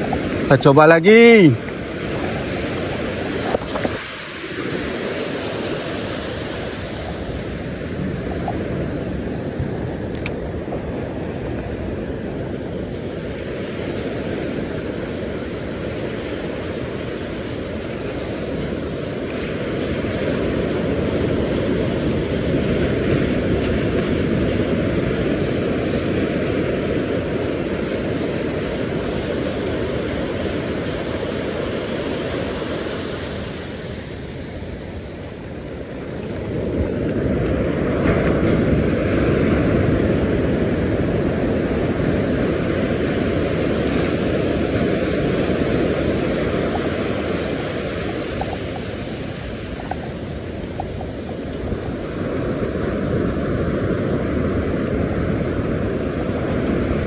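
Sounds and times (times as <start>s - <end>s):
surf rumbling: 0.0s - 57.0s
wind buffeting microphone: 1.2s - 31.6s
small click: 10.1s - 10.4s.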